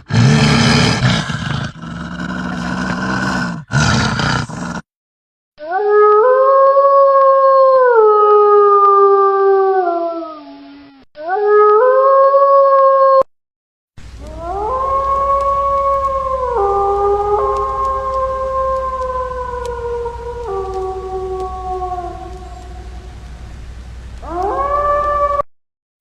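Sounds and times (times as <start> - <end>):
wolf howling: 5.6 - 13.2, 14.2 - 23.3, 24.2 - 25.5
low steady hum: 14.0 - 25.4.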